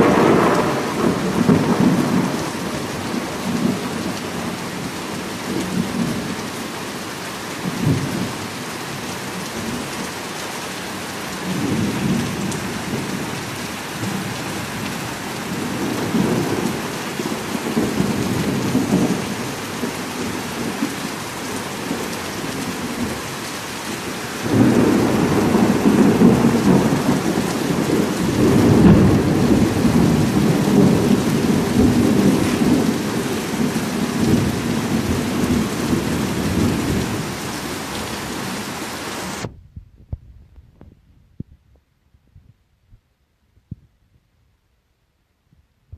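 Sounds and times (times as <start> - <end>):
thunder rumbling: 0.0 - 6.4, 23.9 - 38.7
heavy rain: 0.0 - 39.6.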